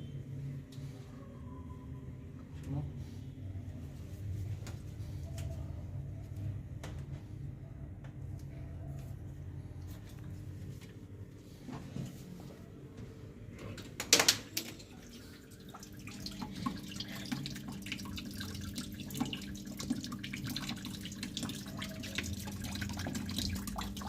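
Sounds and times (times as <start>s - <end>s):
low steady hum: 0.0s - 24.0s
water dripping and trickling: 14.5s - 24.0s.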